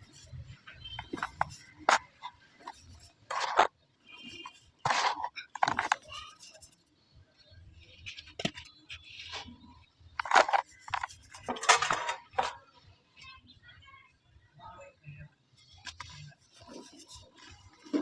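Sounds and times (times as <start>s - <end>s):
cement balls crunching: 0.9s - 3.7s, 10.2s - 12.4s.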